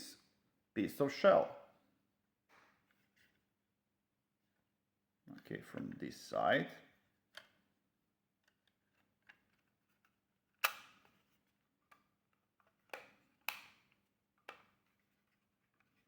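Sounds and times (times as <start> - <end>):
plastic snap-fit clips clicking: 10.6 - 11.0, 12.9 - 14.6.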